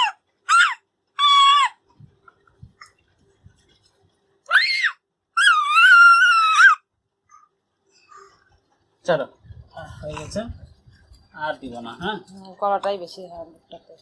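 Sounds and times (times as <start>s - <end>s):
child screaming: 4.5s - 6.9s.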